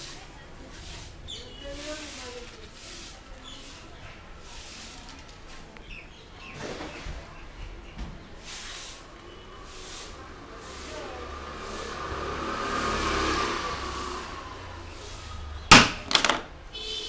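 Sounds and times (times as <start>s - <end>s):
road vehicle passing: 9.0s - 16.8s
loud sharp smacks: 15.7s - 16.6s.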